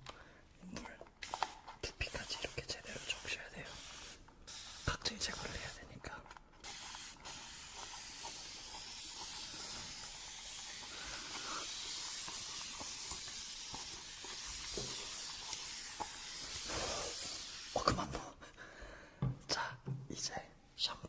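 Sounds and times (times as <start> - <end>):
water spraying from shower sprayer: 1.2 - 5.8, 6.6 - 18.0.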